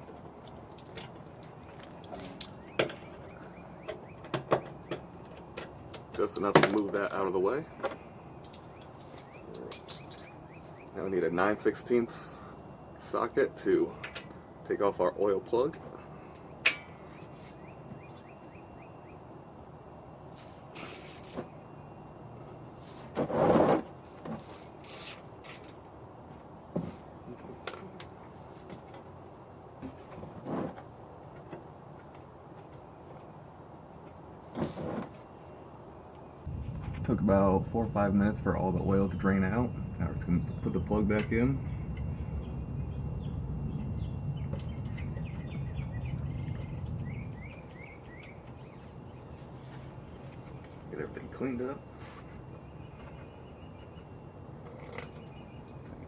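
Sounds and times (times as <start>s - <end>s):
small birds chirping: 1.5s - 6.1s, 7.0s - 12.7s, 15.9s - 19.6s, 38.6s - 56.0s
steady low rumble: 36.4s - 53.0s.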